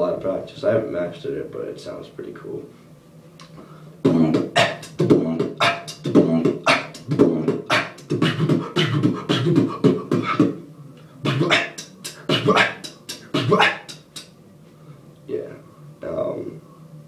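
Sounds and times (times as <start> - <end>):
person beatboxing: 4.0 - 10.6, 11.2 - 14.3.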